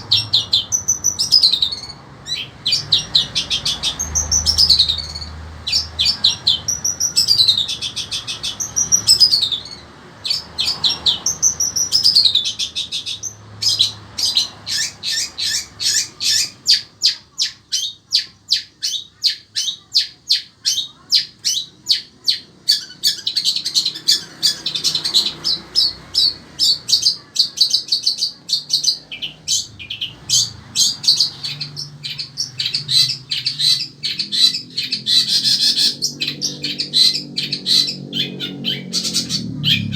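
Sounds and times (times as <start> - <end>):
shrike singing: 0.0 - 39.9.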